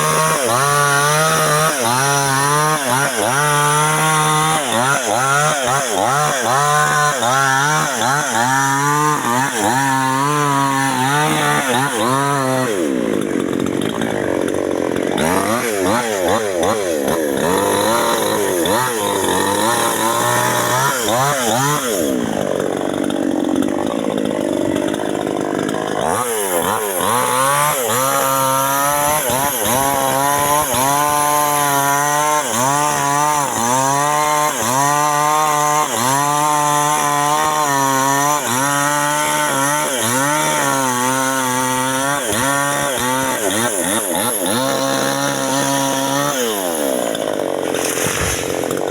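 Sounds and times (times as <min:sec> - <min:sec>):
chainsaw cutting wood: 0:00.0 - 0:48.9.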